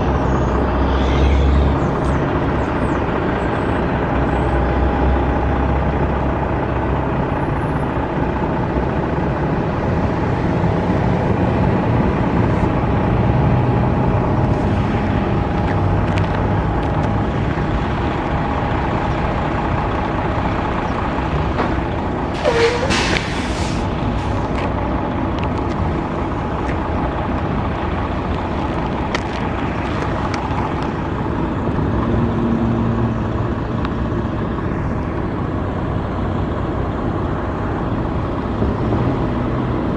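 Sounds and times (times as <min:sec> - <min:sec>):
road traffic passing: 0:00.0 - 0:39.9.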